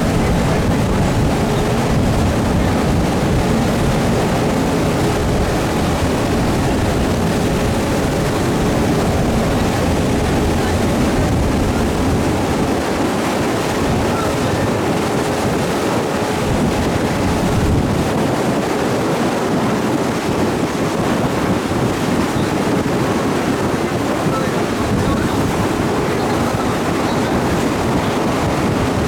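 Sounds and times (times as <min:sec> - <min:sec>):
water washing past boat: 0:00.0 - 0:29.0
wind buffeting microphone: 0:00.0 - 0:29.0.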